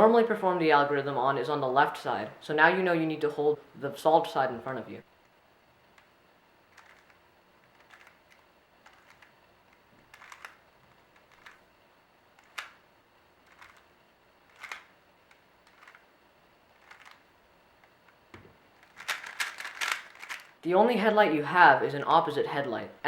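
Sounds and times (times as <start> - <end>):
puzzle cube clicking: 6.7 - 11.6, 12.4 - 12.8, 13.5 - 13.9, 14.5 - 16.0, 16.7 - 17.2, 18.8 - 20.6.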